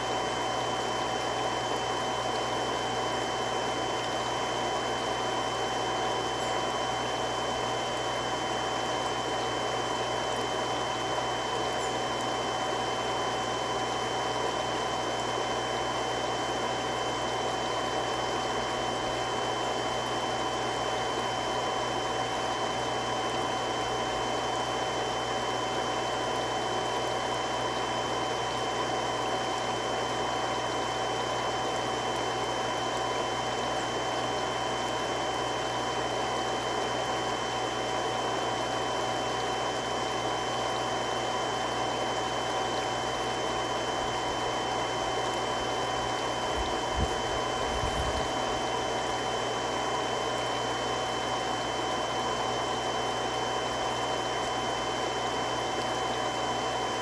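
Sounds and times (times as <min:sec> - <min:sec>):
water pump running: 0:00.0 - 0:57.0.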